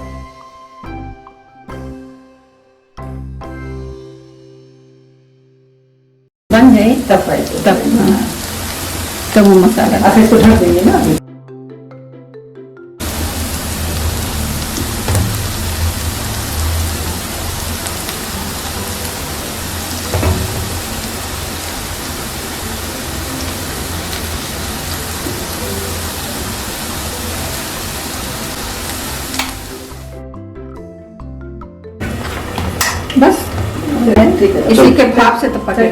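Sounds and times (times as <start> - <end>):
lentils sizzling in a hot pan: 6.6 - 11.2, 13.0 - 30.1.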